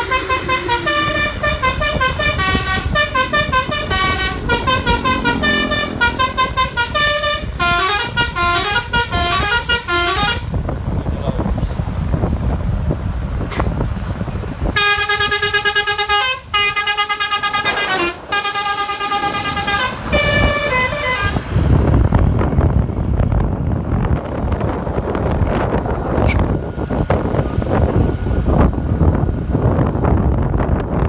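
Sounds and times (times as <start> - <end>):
bus melody horn: 0.0 - 10.6, 14.7 - 21.6
low vehicle rumble: 0.0 - 31.0.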